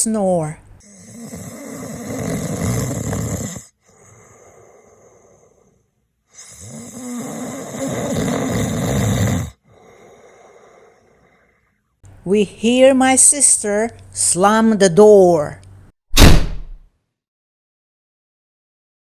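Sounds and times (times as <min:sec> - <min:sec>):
man snoring: 0:00.8 - 0:11.6
quiet breath: 0:03.7 - 0:06.8, 0:09.6 - 0:12.0.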